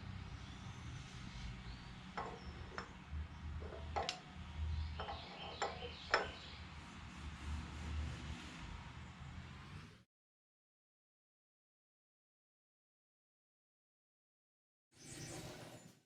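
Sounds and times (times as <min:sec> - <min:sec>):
hand tools clicking and tapping: 0:02.1 - 0:04.3, 0:04.9 - 0:06.5.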